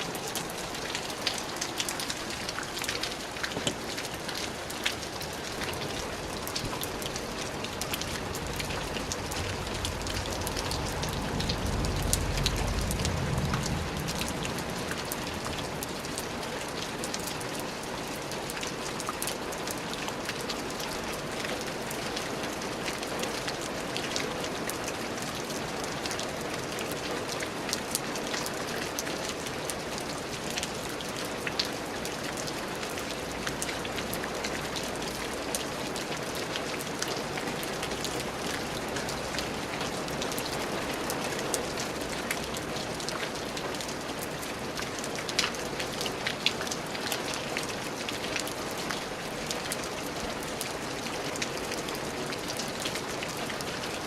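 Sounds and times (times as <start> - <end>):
steady rain falling: 0.0 - 54.0
low rumble: 8.3 - 15.8.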